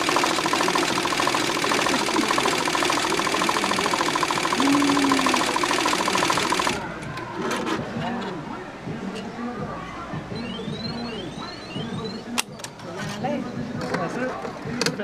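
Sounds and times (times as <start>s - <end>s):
embroidery machine stitching: 0.0s - 6.8s.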